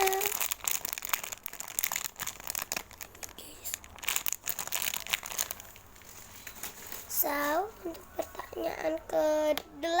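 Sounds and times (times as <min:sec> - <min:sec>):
plastic packaging crinkling: 0:00.0 - 0:08.4.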